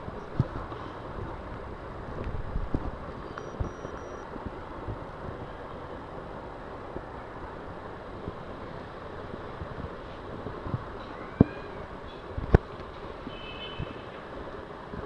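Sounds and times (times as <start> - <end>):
traffic noise: 0.0 - 15.0
wind: 0.0 - 15.0
short high beeps: 3.3 - 4.2.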